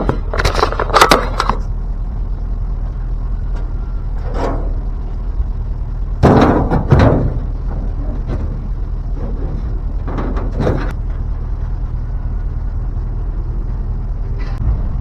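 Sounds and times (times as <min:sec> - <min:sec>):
steady low rumble: 0:00.0 - 0:15.0
scrap clattering into truck bed: 0:04.2 - 0:05.0, 0:06.2 - 0:11.0.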